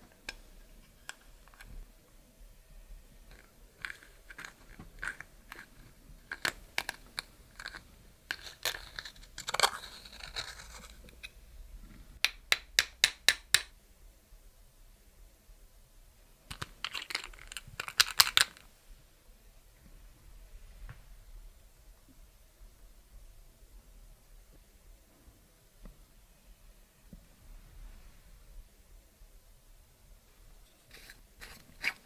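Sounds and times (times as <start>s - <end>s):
scraping and rustling: 3.2s - 12.2s, 30.6s - 32.0s.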